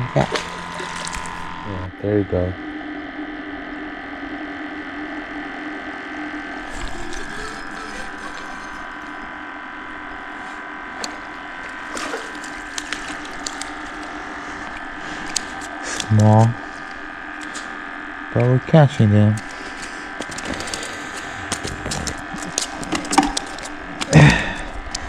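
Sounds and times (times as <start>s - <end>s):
steady hum: 0.0s - 25.0s
fishing reel whirring and ratcheting: 6.6s - 9.3s.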